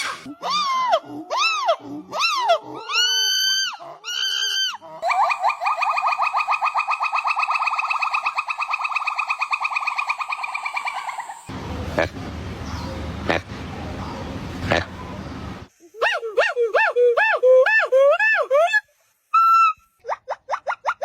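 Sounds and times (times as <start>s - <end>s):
monkey trill: 0.0s - 18.8s, 19.4s - 21.0s
monkey whistle-like calls: 2.2s - 11.3s, 15.8s - 21.0s.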